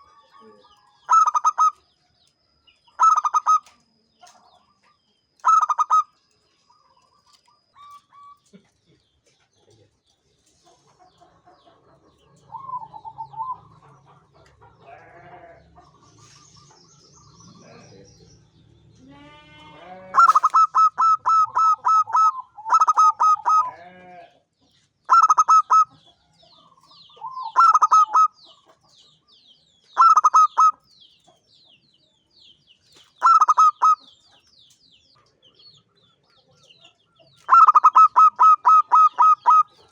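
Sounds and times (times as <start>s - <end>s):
dove cooing song: 0.0s - 1.8s, 3.0s - 4.4s, 5.4s - 6.2s, 12.4s - 14.4s, 20.0s - 23.8s, 25.1s - 26.0s, 26.8s - 28.6s, 30.0s - 30.8s, 33.2s - 34.1s, 37.4s - 39.9s
faint bird chirps: 0.0s - 8.6s, 19.3s - 23.8s.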